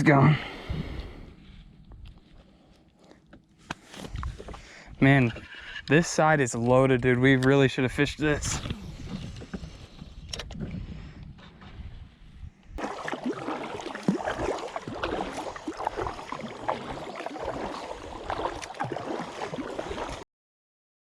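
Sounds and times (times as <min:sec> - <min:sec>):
water splashing around a kayak: 0:12.8 - 0:20.2.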